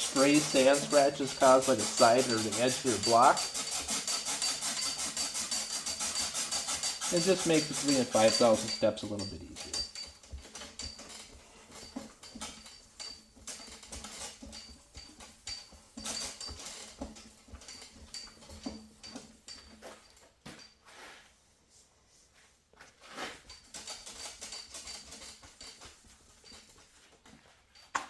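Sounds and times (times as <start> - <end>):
wet sanding by hand: 0.0 - 10.0, 23.2 - 27.0.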